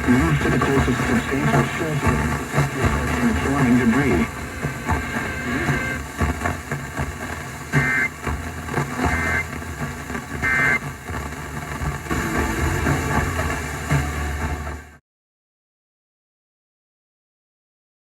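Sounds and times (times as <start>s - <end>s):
buzzy two-tone data bursts: 0.0s - 7.0s, 7.7s - 8.3s, 8.9s - 10.8s
low background rumble: 0.0s - 14.9s.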